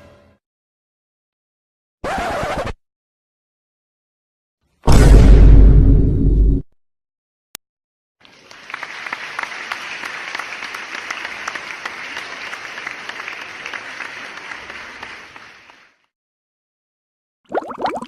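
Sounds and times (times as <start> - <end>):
crowd applauding: 8.2 - 16.1.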